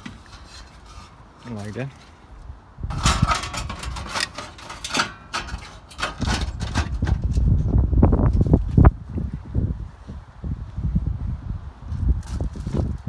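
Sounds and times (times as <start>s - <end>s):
knocks and clatter: 2.9s - 7.8s.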